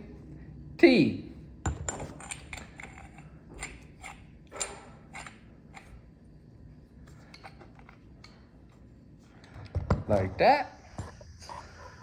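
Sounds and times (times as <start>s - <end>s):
metal pipe fittings clinking: 1.7s - 6.0s.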